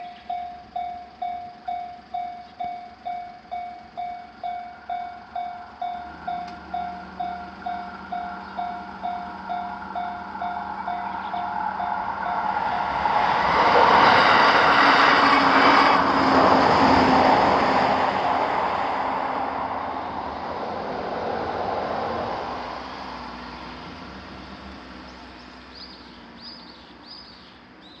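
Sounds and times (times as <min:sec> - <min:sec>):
bird chirps: 0:00.0 - 0:12.4, 0:25.0 - 0:28.0
level crossing warning bell: 0:00.0 - 0:13.6
electric train passing: 0:00.0 - 0:27.9.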